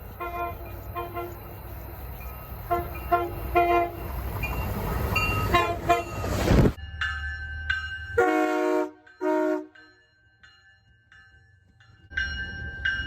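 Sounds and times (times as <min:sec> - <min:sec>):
train rail rumble: 0:00.0 - 0:10.0
train horn short toots: 0:00.2 - 0:01.4, 0:02.7 - 0:04.0, 0:05.5 - 0:06.4, 0:08.2 - 0:09.8.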